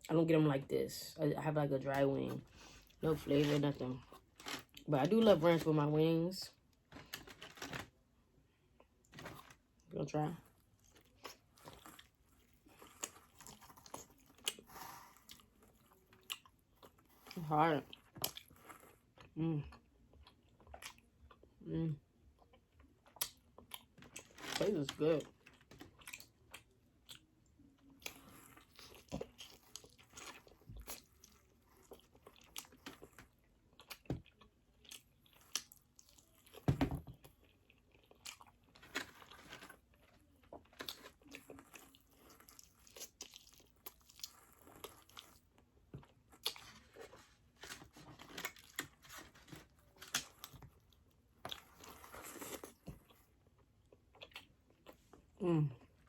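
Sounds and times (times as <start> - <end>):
crunching and chewing food: 1.4 - 56.0.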